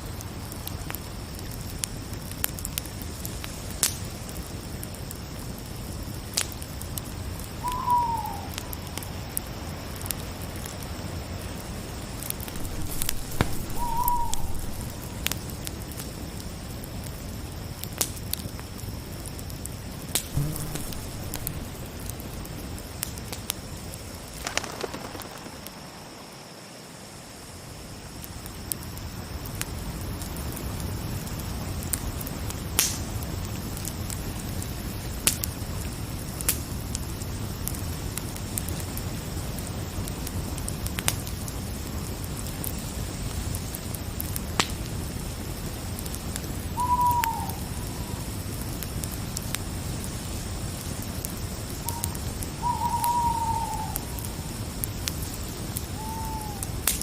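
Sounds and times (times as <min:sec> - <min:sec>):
wood fire crackling and popping: 0:00.0 - 0:26.8, 0:27.9 - 0:57.0
crickets chirring: 0:00.0 - 0:57.0
short falling calls: 0:07.6 - 0:08.5, 0:12.6 - 0:15.1, 0:20.3 - 0:22.0, 0:46.8 - 0:48.2, 0:51.9 - 0:54.1.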